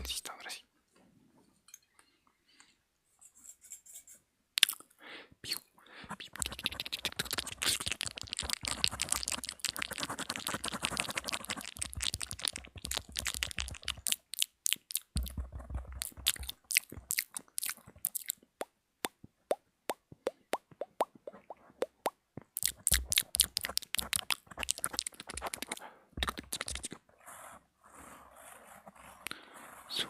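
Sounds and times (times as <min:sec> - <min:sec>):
wet tongue and lip clicks: 0:04.6 - 0:04.8, 0:05.5 - 0:27.0
mouth popping plops: 0:06.2 - 0:26.9.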